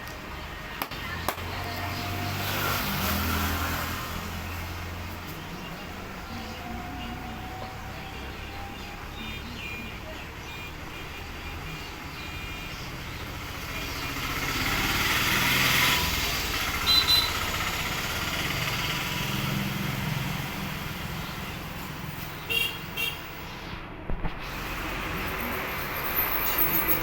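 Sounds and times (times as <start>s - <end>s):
motor vehicle passing: 0.4s - 9.2s, 13.0s - 21.7s.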